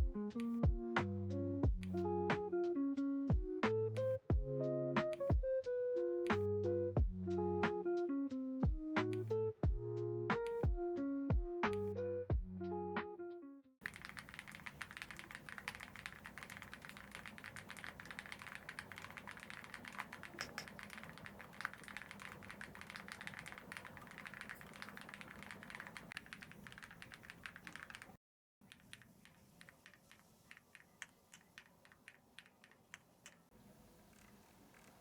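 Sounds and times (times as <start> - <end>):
mechanical keyboard typing: 13.8 - 33.5.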